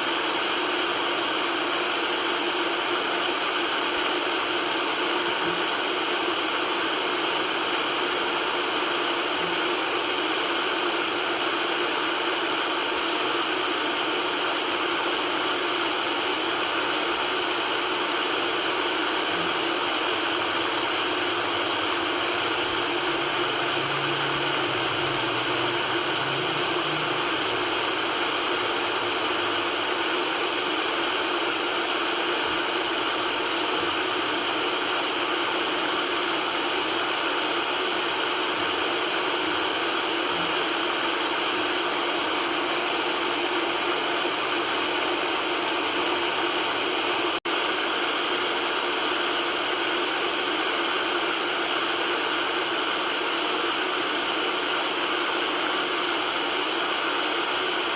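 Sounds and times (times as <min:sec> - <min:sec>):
white noise hiss: 0:20.4 - 0:30.5.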